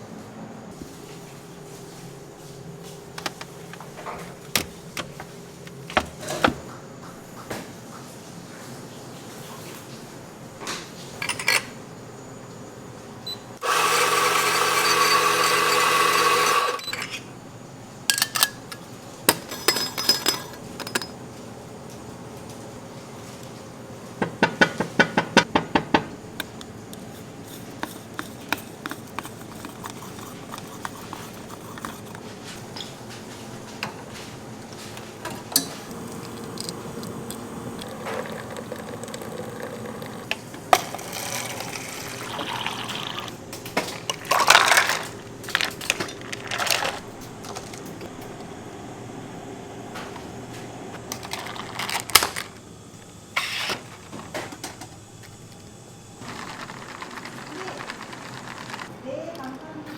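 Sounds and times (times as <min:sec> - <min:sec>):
small electric motor whirring: 0:13.6 - 0:16.8.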